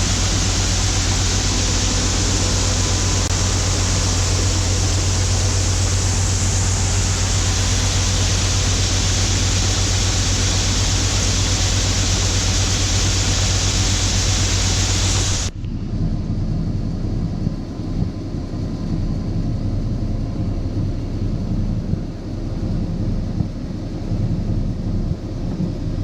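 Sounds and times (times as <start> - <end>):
loud even hiss: 0.0 - 15.6
low engine drone: 0.0 - 26.0.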